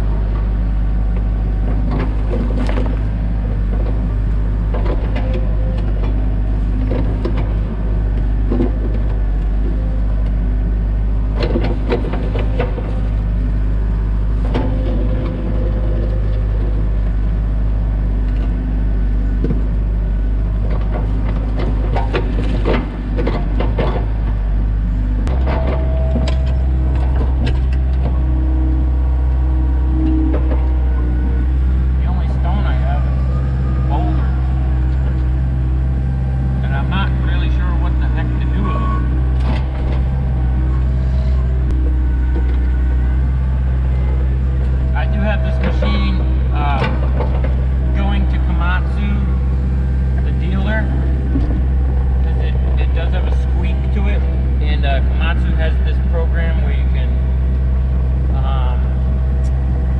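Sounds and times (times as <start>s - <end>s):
excavator diesel engine: 0.0s - 59.9s
clanks and knocks: 1.6s - 10.4s, 11.3s - 13.4s, 14.3s - 16.9s, 20.6s - 31.8s, 33.1s - 55.5s.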